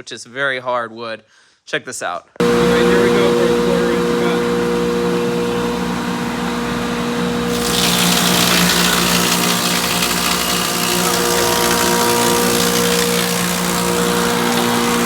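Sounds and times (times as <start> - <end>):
planer motor humming: 2.4 - 15.0
planer knives cutting wood: 7.5 - 15.0.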